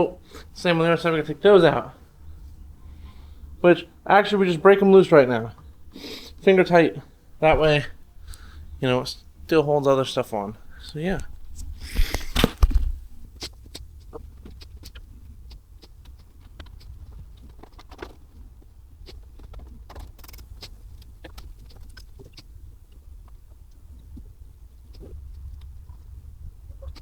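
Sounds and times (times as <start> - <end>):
low steady hum: 0.0 - 27.0.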